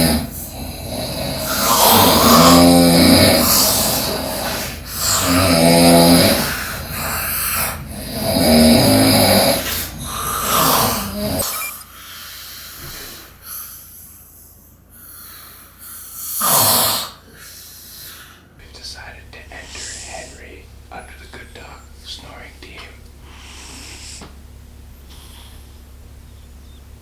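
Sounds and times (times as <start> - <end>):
man snoring loudly: 0.0 - 11.8, 16.1 - 17.4, 18.6 - 24.3.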